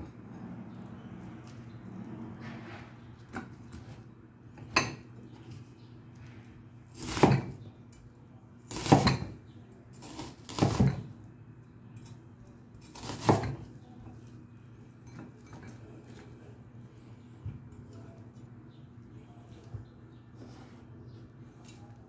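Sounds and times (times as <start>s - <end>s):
dishes and utensils knocking: 4.6s - 5.3s, 8.8s - 9.4s.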